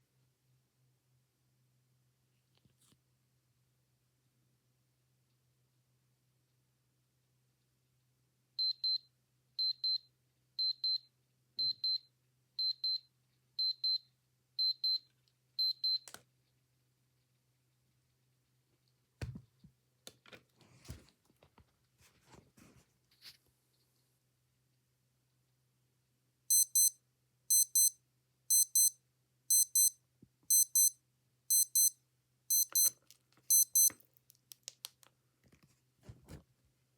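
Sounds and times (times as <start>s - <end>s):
digital watch alarm beeping: 26.5s - 32.9s, 33.5s - 33.9s.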